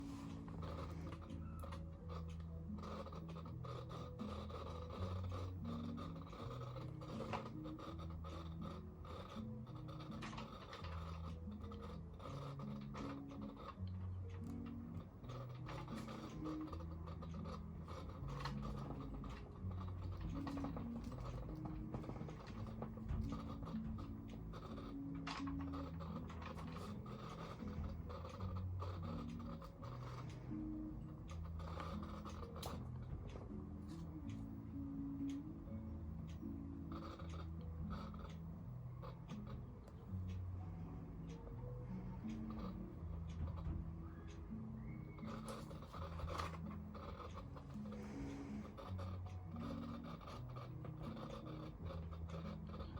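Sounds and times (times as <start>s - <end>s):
small clicks: 0.0s - 40.5s.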